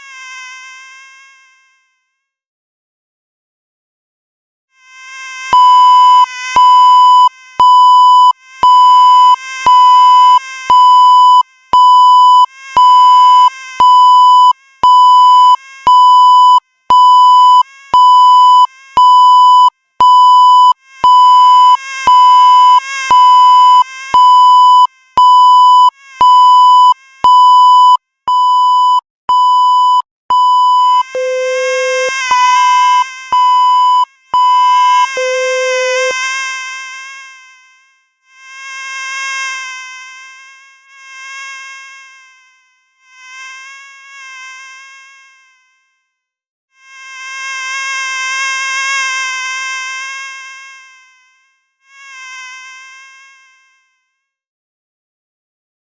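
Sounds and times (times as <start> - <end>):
high-pitched electronic beeps: 5.6 - 36.2
lower electronic tone: 30.4 - 36.4.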